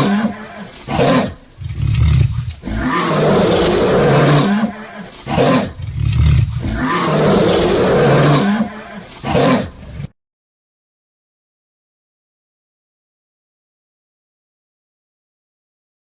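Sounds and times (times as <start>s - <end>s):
big cat roaring and snarling: 0.0s - 10.2s.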